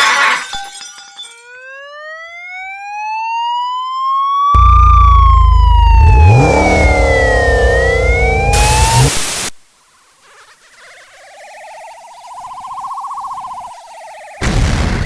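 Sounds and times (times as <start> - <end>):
siren wailing: 1.6 - 9.5, 10.4 - 14.8
loud distorted low drone: 4.6 - 9.5.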